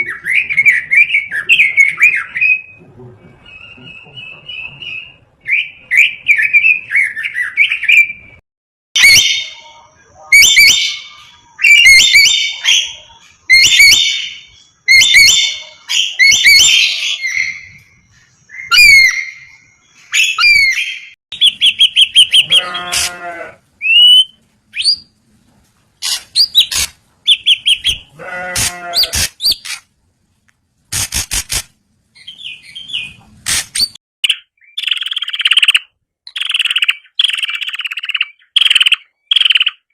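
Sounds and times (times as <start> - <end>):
birds whistling and trilling: 0.0 - 8.4, 10.4 - 22.9, 23.8 - 25.2, 26.0 - 28.4, 29.0 - 29.8, 32.2 - 39.9
nasal bleat-like bird calls: 22.3 - 23.6, 28.1 - 29.3.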